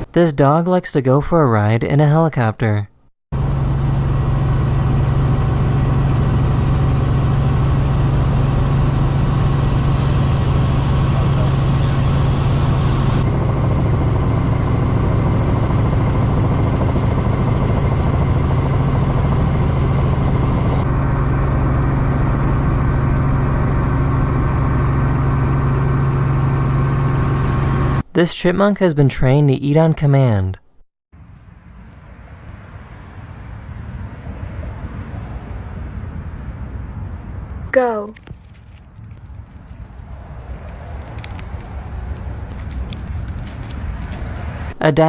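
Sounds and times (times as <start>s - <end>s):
helicopter engine and rotor drone: 3.4s - 28.0s, 31.2s - 44.8s.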